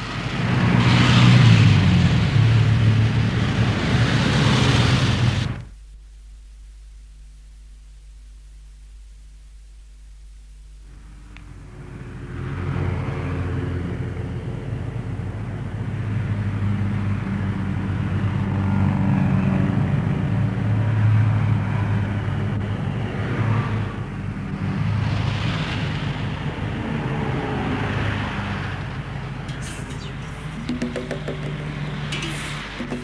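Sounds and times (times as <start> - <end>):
vehicle engine running: 28.7 - 33.0.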